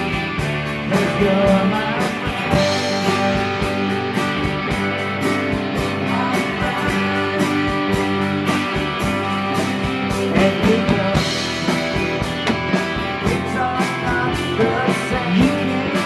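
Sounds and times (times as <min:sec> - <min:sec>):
electric guitars ringing: 0:00.0 - 0:16.0
drum beat: 0:00.1 - 0:16.0.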